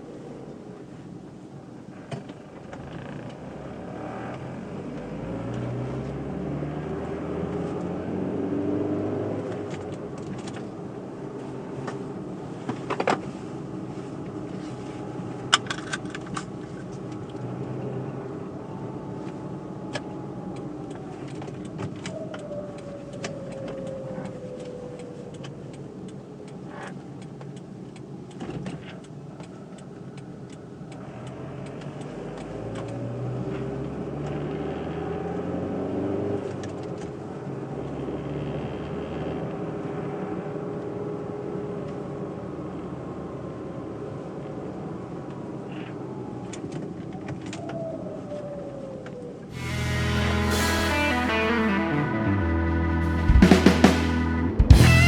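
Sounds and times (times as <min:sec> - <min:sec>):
car engine driving: 0:49.5 - 0:55.0.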